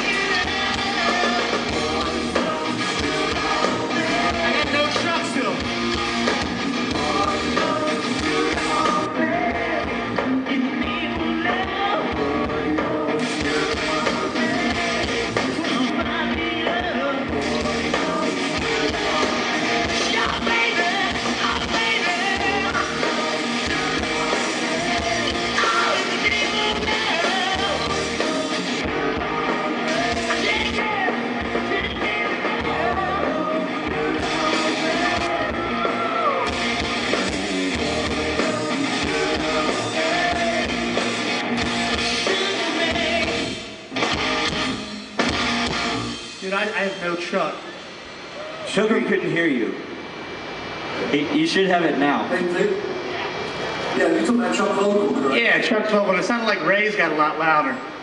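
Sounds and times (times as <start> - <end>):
person singing: 0.0 - 5.3, 6.8 - 41.1, 42.1 - 43.6
drums: 0.0 - 58.0
electric guitars: 0.0 - 58.0.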